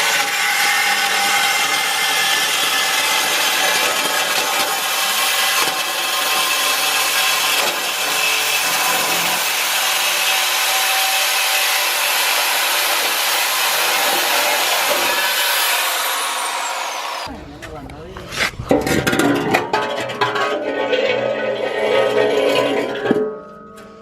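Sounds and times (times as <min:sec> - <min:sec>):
power tool cutting metal pipe: 0:00.0 - 0:17.3.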